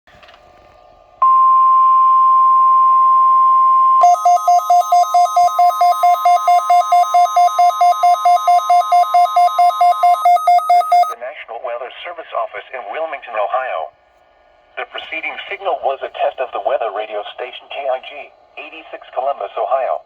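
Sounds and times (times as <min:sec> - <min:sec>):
buzzy two-pitch electronic alarm: 0:04.0 - 0:11.2
steady pure alarm tone: 0:04.0 - 0:11.2.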